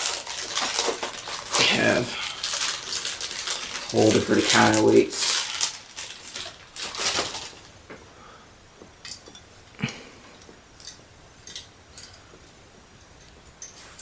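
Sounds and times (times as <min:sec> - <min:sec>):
packaging rustling: 0:00.0 - 0:07.7.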